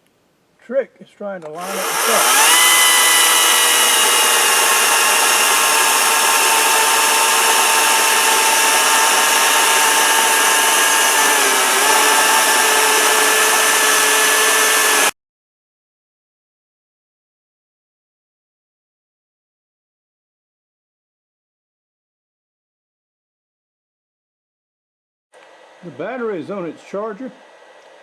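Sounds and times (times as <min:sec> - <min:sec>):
electric chainsaw cutting wood: 0:01.5 - 0:15.2.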